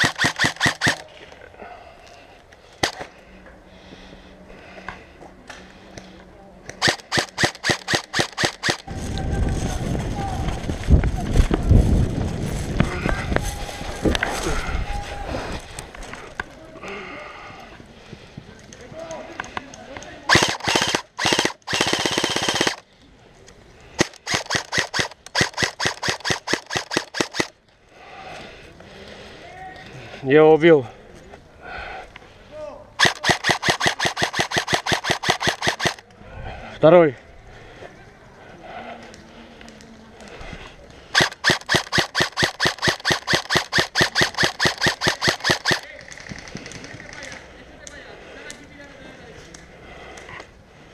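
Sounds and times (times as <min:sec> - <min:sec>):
airsoft guns firing: 0:00.0 - 0:01.0, 0:06.7 - 0:08.9, 0:20.3 - 0:22.8, 0:24.0 - 0:27.5, 0:33.0 - 0:36.0, 0:41.1 - 0:47.4.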